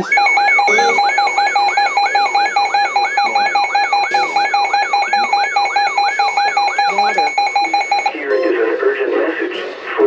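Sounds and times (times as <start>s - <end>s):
pulsing lower tone: 0.0s - 8.1s
rapidly sweeping siren tone: 0.0s - 8.1s
steady high tone: 0.0s - 8.3s.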